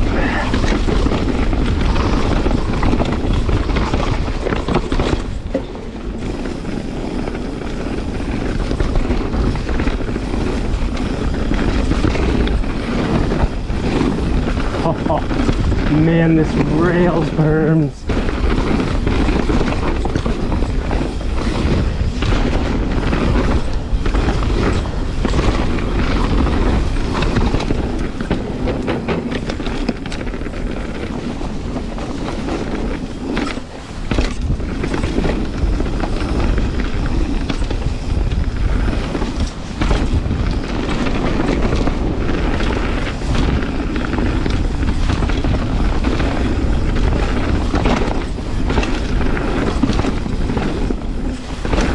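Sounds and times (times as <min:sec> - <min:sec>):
tyre roar: 0:00.0 - 0:01.2
bike rattling and knocking: 0:00.0 - 0:51.9
wind rush over microphone: 0:00.0 - 0:51.9.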